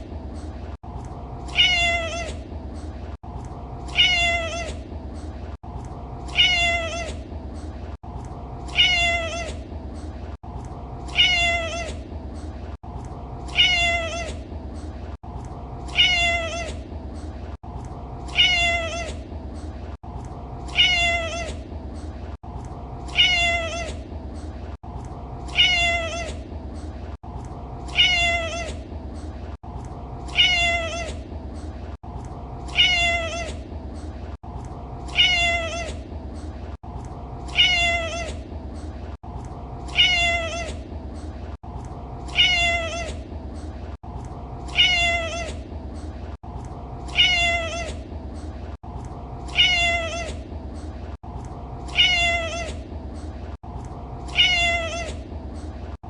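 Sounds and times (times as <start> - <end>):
cat meowing: 1.5 - 2.4, 3.9 - 4.8, 6.3 - 7.2, 8.7 - 9.6, 11.1 - 12.0, 13.5 - 14.4, 15.9 - 16.8, 18.3 - 19.2, 20.7 - 21.6, 23.1 - 24.0, 25.5 - 26.4, 27.9 - 28.8, 30.3 - 31.2, 32.7 - 33.6, 35.1 - 36.0, 37.5 - 38.4, 39.9 - 40.8, 42.3 - 43.2, 44.7 - 45.6, 47.1 - 48.0, 49.5 - 50.4, 51.9 - 52.8, 54.3 - 55.2.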